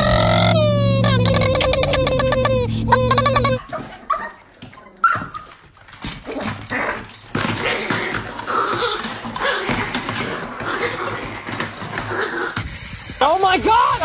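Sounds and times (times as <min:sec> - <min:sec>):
dog whimpering: 0:00.0 - 0:05.6.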